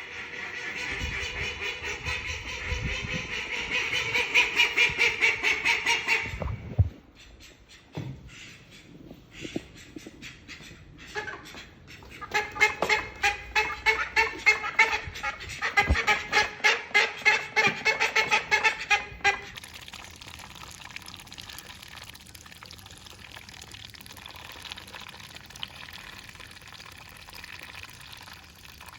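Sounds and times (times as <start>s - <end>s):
duck quacking loudly: 0.0s - 6.4s, 10.5s - 19.6s.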